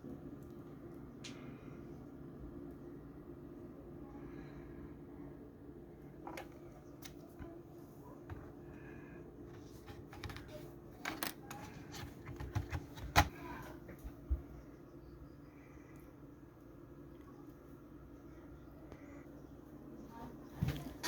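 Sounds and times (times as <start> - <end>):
steady low hum: 0.0 - 21.0
clicks and knocks of laptop handling: 9.8 - 13.4.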